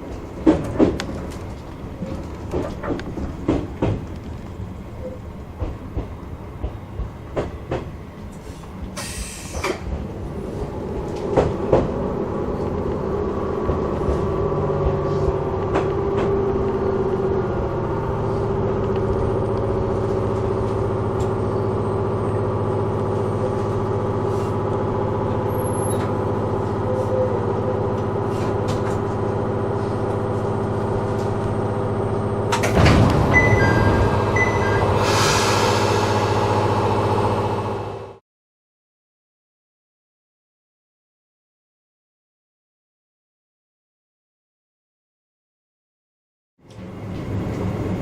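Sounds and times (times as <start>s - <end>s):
train wheels clicking over rail joints: 0.0s - 10.1s
train running drone: 0.0s - 38.2s, 46.6s - 48.0s.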